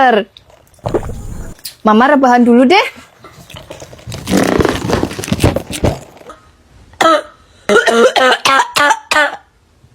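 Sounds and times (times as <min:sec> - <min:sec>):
woman coughing: 0:07.0 - 0:09.4.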